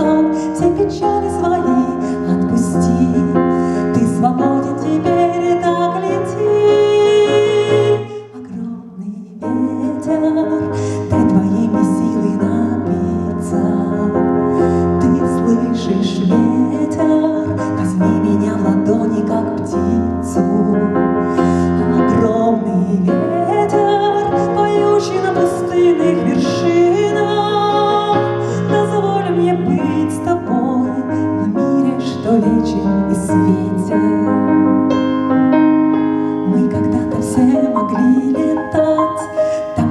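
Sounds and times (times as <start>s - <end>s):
keyboard-led instrumental music: 10.2s - 39.9s.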